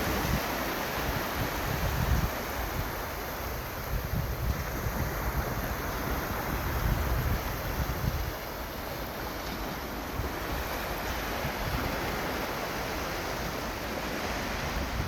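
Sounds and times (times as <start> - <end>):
sea surf washing ashore: 0.0 - 15.0
wind rumbling on microphone: 0.0 - 15.0.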